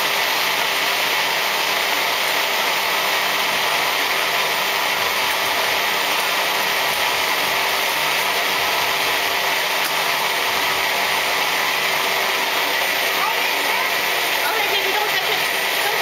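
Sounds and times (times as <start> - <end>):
blender motor running: 0.0 - 16.0.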